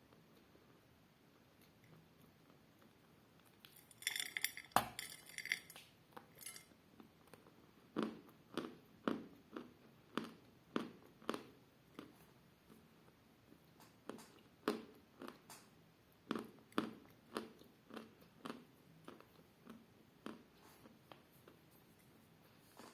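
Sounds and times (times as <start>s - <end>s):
chalk clinking against container: 3.7s - 5.8s, 6.4s - 6.7s.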